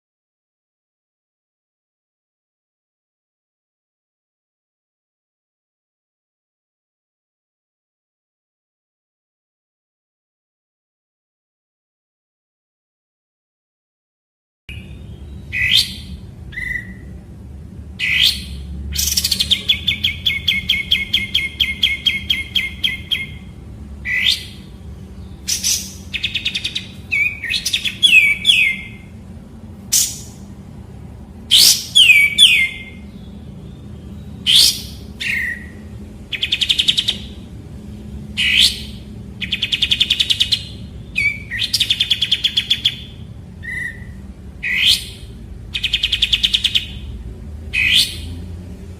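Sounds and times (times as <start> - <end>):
bird singing whistles and trills: 14.7 - 17.2, 18.0 - 29.1, 31.5 - 37.5, 38.4 - 48.5.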